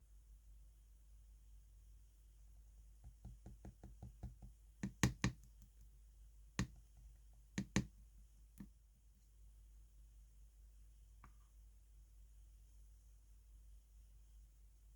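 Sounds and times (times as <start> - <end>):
sharp knocks on hard surface: 3.0 - 5.5, 6.6 - 6.9, 7.6 - 7.9.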